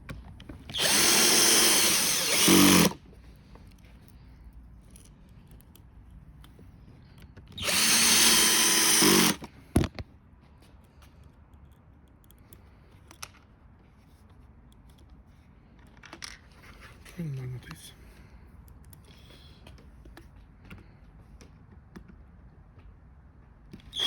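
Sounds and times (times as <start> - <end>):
electric screwdriver motor whine: 0.7 - 3.0, 7.5 - 9.5.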